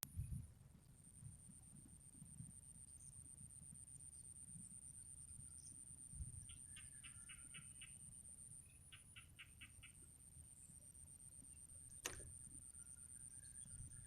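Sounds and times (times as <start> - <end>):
faint bird call: 6.4 - 8.0.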